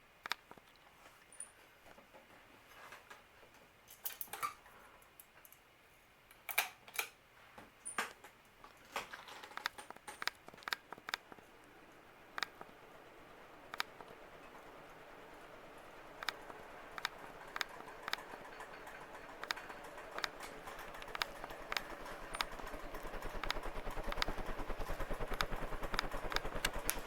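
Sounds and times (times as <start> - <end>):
ceiling fan whirring: 0.0 - 27.0
sharp clicks: 0.2 - 0.8, 9.5 - 12.8, 13.7 - 27.0.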